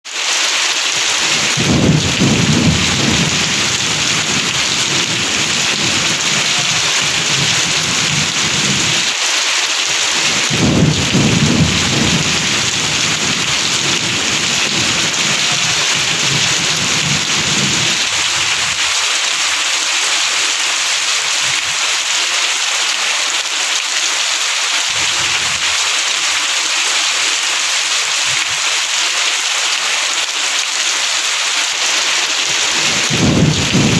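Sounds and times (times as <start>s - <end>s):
heavy rain: 0.0s - 33.9s
thunder rolling: 1.0s - 9.1s, 10.0s - 19.0s, 32.4s - 33.9s.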